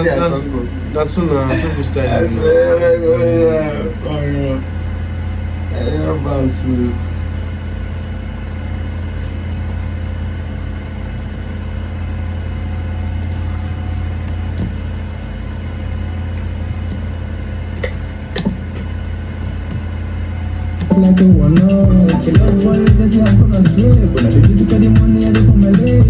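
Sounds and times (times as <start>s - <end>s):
low machine hum with tones: 0.0s - 26.0s.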